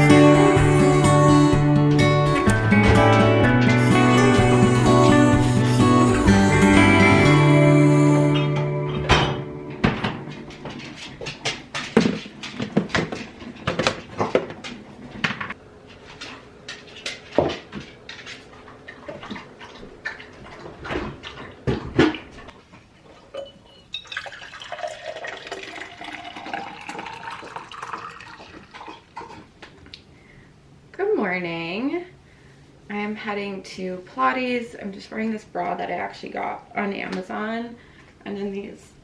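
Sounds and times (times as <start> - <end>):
running water: 23.2 - 29.5.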